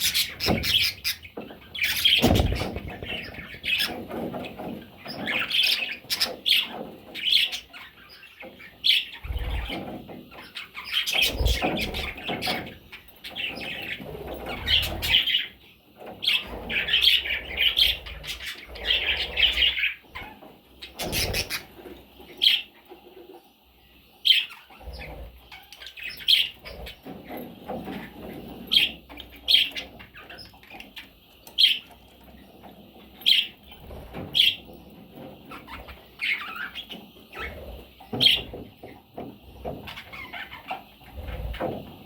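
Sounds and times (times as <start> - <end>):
budgerigars chirping: 0.0 - 15.6, 16.2 - 21.7, 24.2 - 27.0, 35.5 - 38.6.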